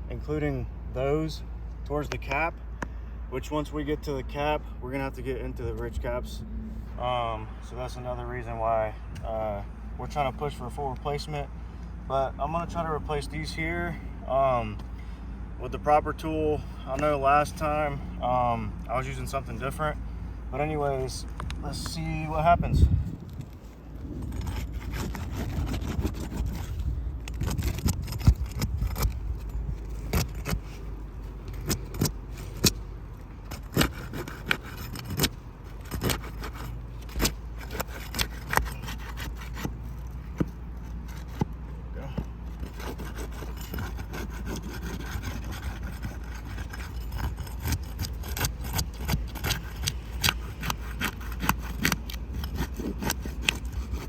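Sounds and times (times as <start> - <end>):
tool scraping roof shingles: 22.6 - 54.0.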